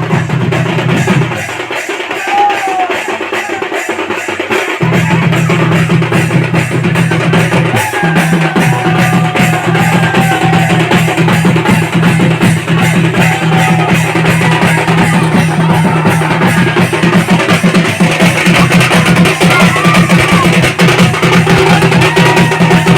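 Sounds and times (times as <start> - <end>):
loud music with fast drum beat: 0.0 - 22.9.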